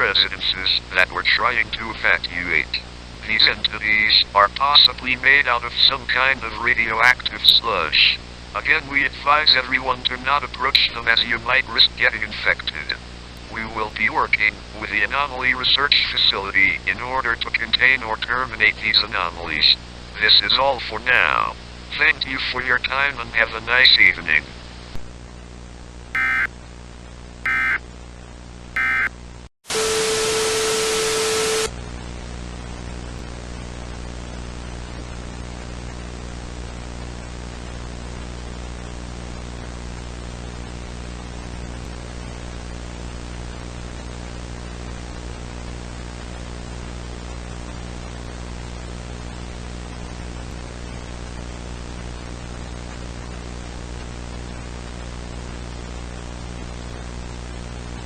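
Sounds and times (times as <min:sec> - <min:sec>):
loud static: 0:26.2 - 0:26.5, 0:27.5 - 0:27.8, 0:28.8 - 0:29.1
warbling digital data tones: 0:26.2 - 0:26.5, 0:27.5 - 0:27.8, 0:28.8 - 0:29.1.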